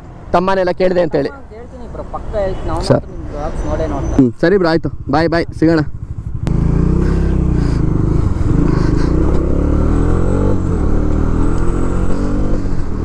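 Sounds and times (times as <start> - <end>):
motorcycle engine riding off: 4.9 - 13.0.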